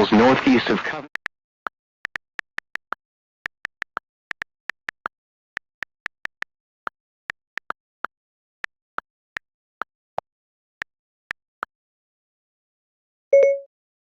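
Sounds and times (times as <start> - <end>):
short electronic beeps: 13.3 - 13.7.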